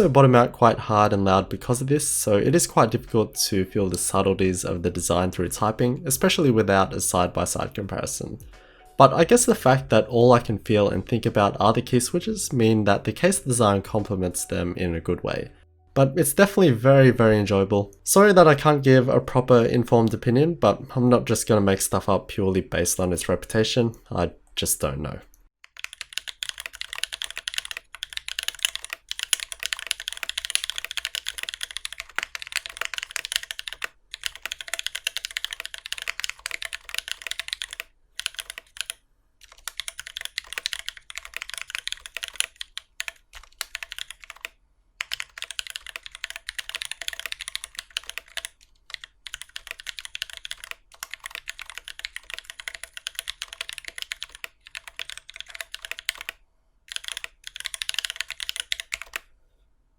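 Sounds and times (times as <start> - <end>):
mechanical keyboard typing: 25.6 - 59.3.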